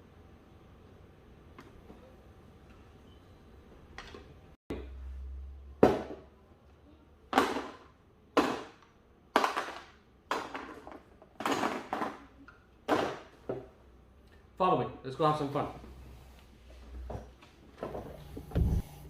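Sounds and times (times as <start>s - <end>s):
low hum: 18.2s - 19.0s.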